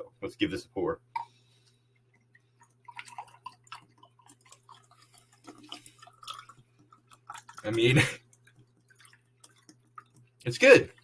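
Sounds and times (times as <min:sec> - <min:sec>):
low electrical hum: 0:00.0 - 0:11.0
liquid glugging into a glass: 0:02.0 - 0:10.4.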